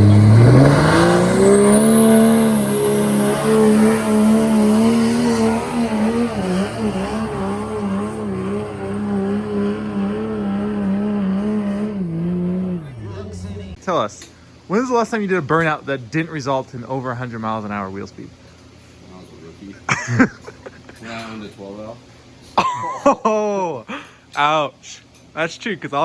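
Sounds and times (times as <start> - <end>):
diesel engine revving: 0.0 - 13.9.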